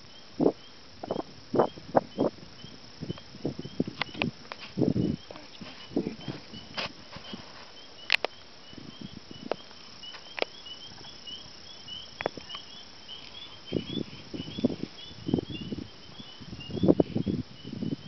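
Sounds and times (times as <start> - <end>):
sharp clicks: 8.0 - 8.4.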